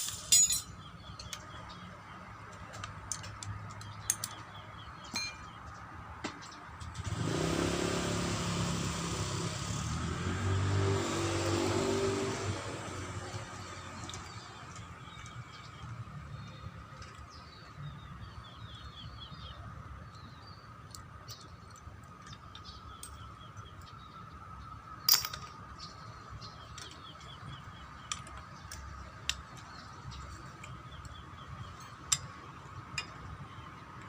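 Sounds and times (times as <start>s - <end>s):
birds chirping: 0.0s - 7.3s, 10.3s - 34.0s.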